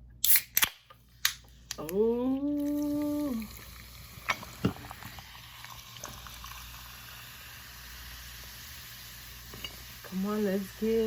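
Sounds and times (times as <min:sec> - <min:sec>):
seafood boil bubbling: 0:02.5 - 0:11.0.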